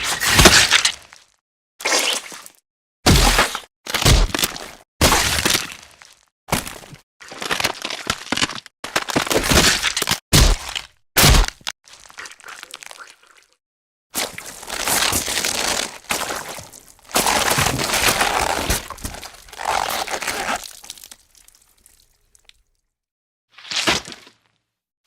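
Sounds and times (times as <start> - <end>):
bones cracking and crunching: 6.0 - 13.4, 14.2 - 22.6
heavy crunching hit: 14.8 - 20.8.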